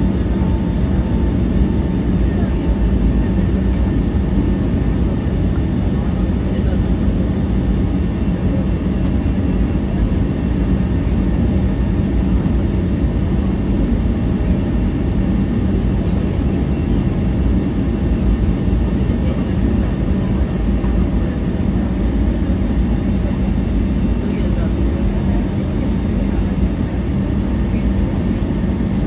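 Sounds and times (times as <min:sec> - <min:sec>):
aircraft cabin engine rumble: 0:00.0 - 0:29.0.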